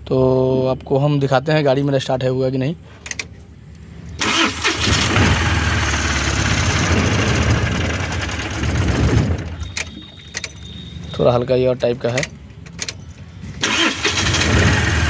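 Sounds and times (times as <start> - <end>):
diesel engine cranking and starting: 4.1 - 10.7, 12.1 - 15.0
diesel engine running: 4.2 - 10.3, 12.6 - 15.0.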